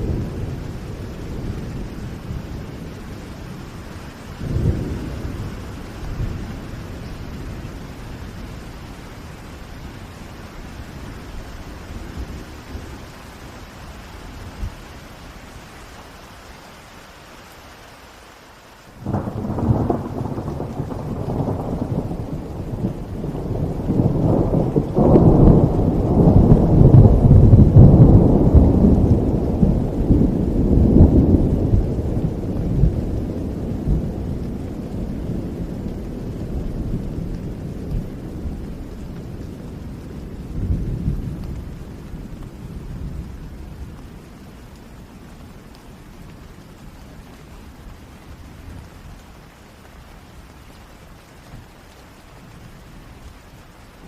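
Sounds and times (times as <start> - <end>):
thunderclap rumbling: 0.0 - 13.5, 19.0 - 45.4
steady rain: 0.0 - 54.0.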